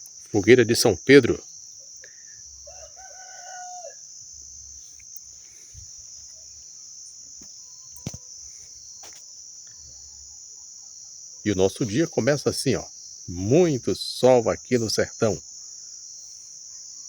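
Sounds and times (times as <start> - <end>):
crickets trilling: 0.0 - 17.0
rooster crowing: 2.6 - 4.2.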